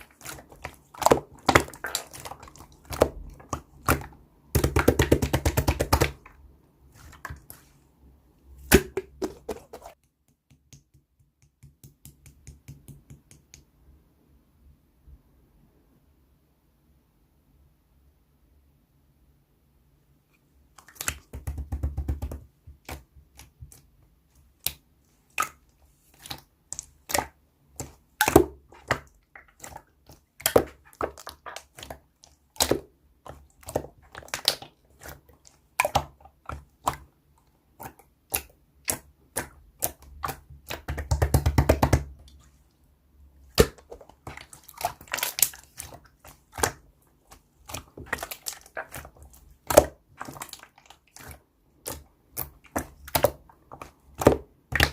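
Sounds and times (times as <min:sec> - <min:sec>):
slime crackling rapidly: 0:00.0 - 0:06.3, 0:38.3 - 0:42.4, 0:43.5 - 0:54.9.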